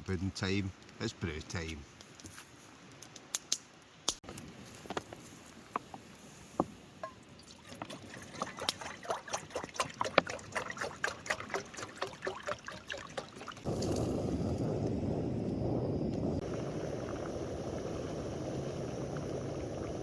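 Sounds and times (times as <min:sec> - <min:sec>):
water pouring into pot: 0:07.0 - 0:14.7.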